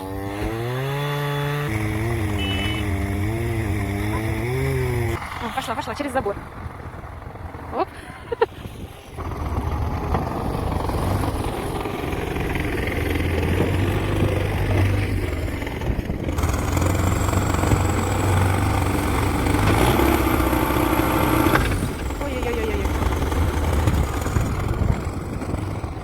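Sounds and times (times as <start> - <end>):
engine running: 0.0 - 26.0.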